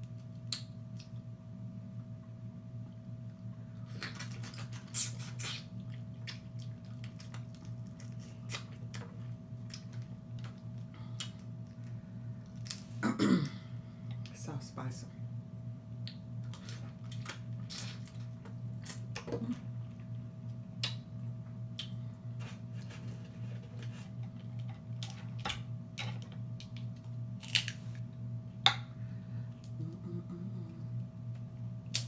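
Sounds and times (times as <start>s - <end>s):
lip smacking and chewing: 3.9s - 11.9s.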